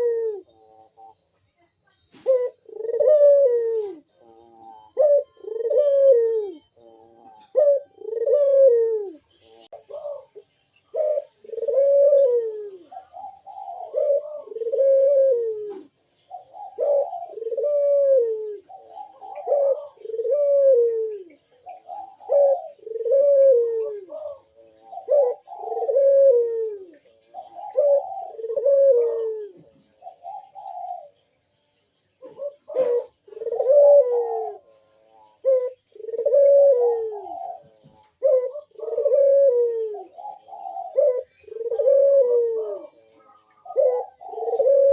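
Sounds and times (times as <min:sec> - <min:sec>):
dove cooing: 0:00.0 - 0:31.3, 0:32.1 - 0:44.9.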